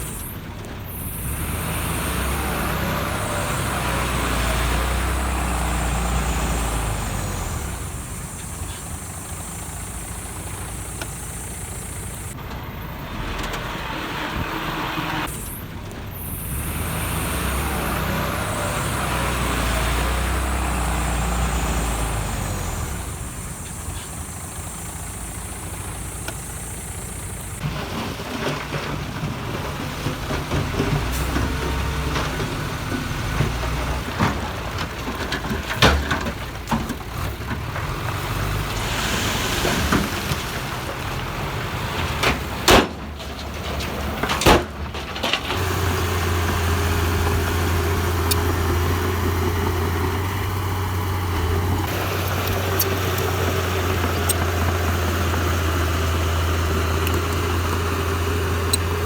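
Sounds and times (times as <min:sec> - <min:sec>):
heavy diesel engine running: 0:00.0 - 0:59.0.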